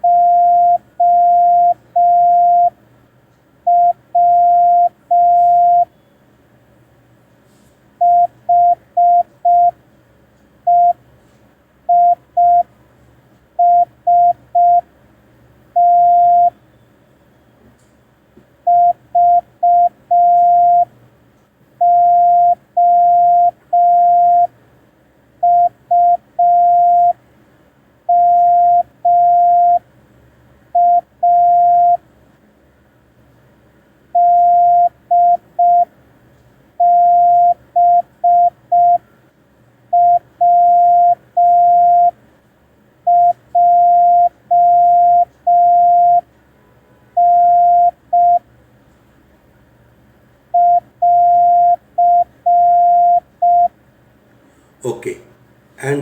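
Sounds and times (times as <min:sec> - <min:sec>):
morse code beeps: 0:00.0 - 0:02.8, 0:03.7 - 0:05.9, 0:08.0 - 0:09.8, 0:10.7 - 0:11.0, 0:11.9 - 0:12.7, 0:13.6 - 0:14.9, 0:15.8 - 0:16.6, 0:18.7 - 0:20.9, 0:21.8 - 0:24.5, 0:25.4 - 0:27.2, 0:28.1 - 0:29.8, 0:30.8 - 0:32.0, 0:34.2 - 0:35.9, 0:36.8 - 0:39.0, 0:39.9 - 0:42.2, 0:43.1 - 0:46.3, 0:47.2 - 0:48.4, 0:50.5 - 0:53.7.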